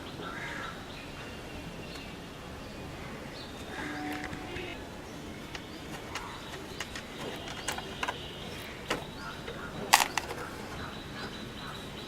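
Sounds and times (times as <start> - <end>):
faint bird chirps: 0.0 - 12.0
objects being handled and set down: 3.6 - 10.8.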